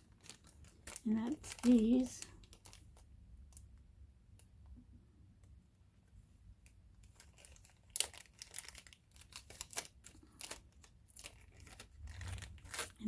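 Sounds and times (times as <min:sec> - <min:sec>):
packaging crinkling: 0:00.0 - 0:03.7, 0:07.0 - 0:13.0.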